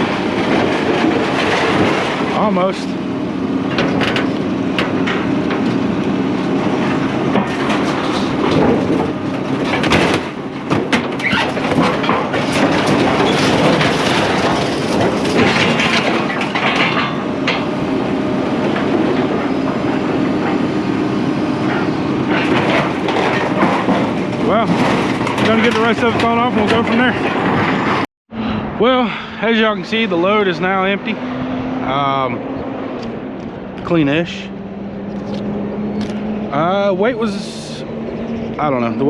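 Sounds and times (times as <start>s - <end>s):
scrap metal clanking: 3.6s - 18.0s, 21.6s - 28.0s.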